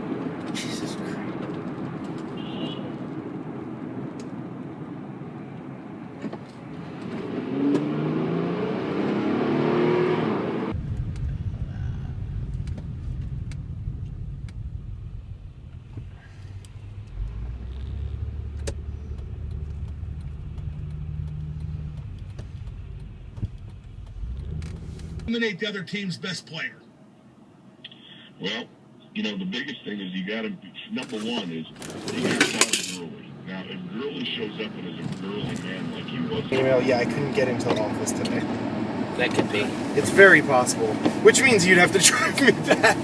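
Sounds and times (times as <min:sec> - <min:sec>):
road noise inside car: 0:00.0 - 0:43.0
car engine accelerating: 0:06.0 - 0:25.4, 0:31.7 - 0:43.0
low steady engine drone: 0:10.7 - 0:43.0.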